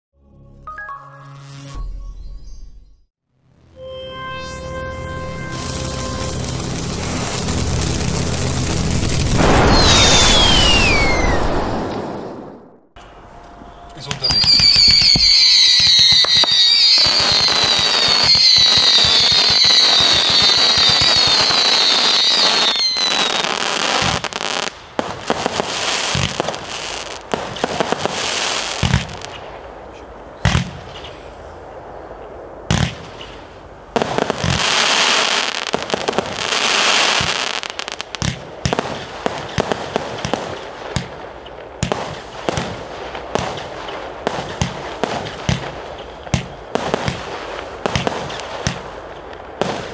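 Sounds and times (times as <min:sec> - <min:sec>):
firework falling whistles: 0:03.8 - 0:24.7, 0:34.2 - 0:40.4
firework crackle: 0:04.9 - 0:13.0, 0:14.0 - 0:49.9
firework sharp bangs: 0:05.6 - 0:12.9, 0:14.0 - 0:31.3, 0:32.6 - 0:49.9.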